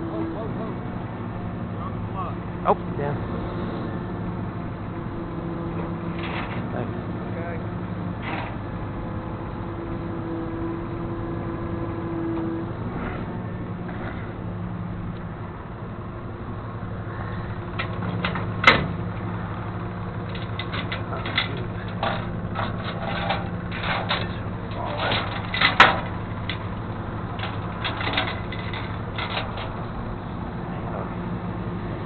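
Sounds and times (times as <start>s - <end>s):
truck engine idling: 12.4s - 32.0s
knocks and clatter: 17.7s - 19.2s, 20.2s - 30.0s.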